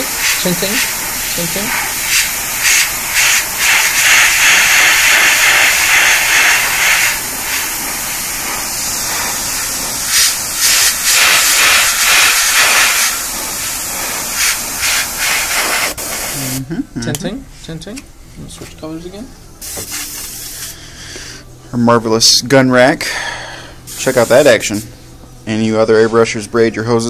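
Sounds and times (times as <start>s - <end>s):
airbrush hissing: 0.0s - 16.6s, 19.6s - 21.4s, 23.9s - 25.0s.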